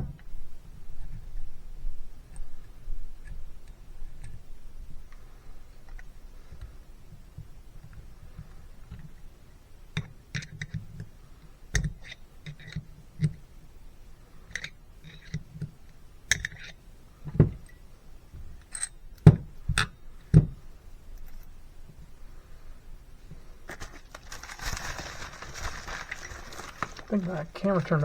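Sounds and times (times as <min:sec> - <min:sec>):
hand tool and metal parts clicking: 0:18.6 - 0:19.2.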